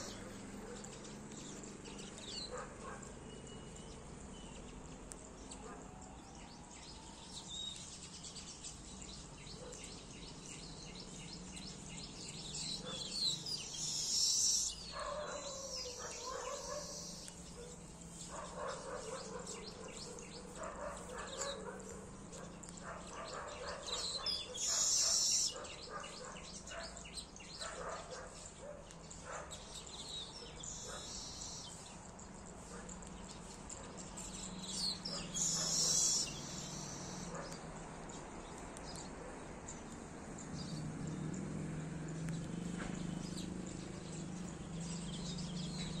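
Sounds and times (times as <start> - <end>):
birds chirping and calling: 0.0 - 46.0
loud high chirping bursts: 13.6 - 14.9, 24.5 - 25.6, 35.3 - 37.3
lower animal calls: 35.2 - 37.3.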